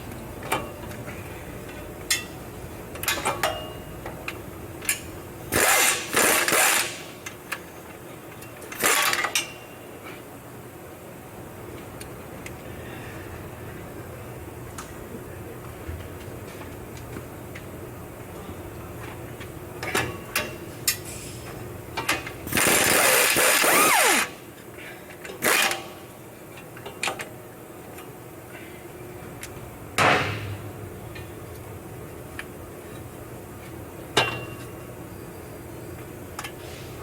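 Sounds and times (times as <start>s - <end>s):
power ratchet running: 5.5s - 7.0s, 22.5s - 24.4s, 25.4s - 25.8s.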